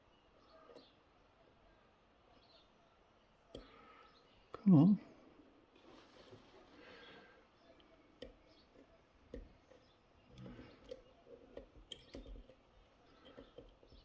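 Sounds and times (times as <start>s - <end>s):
metal tools clicking in a lock: 10.4s - 14.0s.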